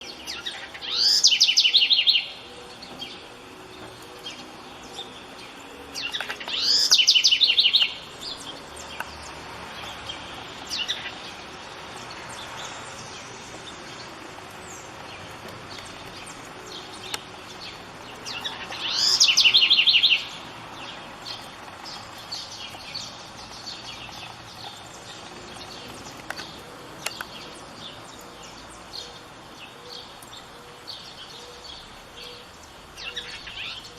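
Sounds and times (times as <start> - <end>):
wren song with bubbling trill: 14.6 - 26.2.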